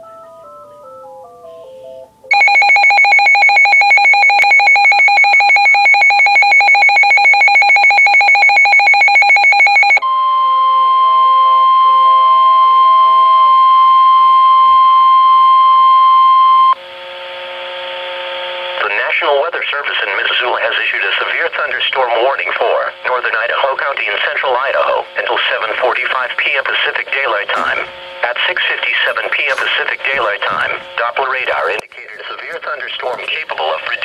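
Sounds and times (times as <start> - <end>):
faint electronic melody: 0.0 - 2.4
rapidly pulsing electronic alarm: 2.3 - 16.8, 24.0 - 34.0
steady high warning tone: 2.3 - 19.0, 22.7 - 34.0.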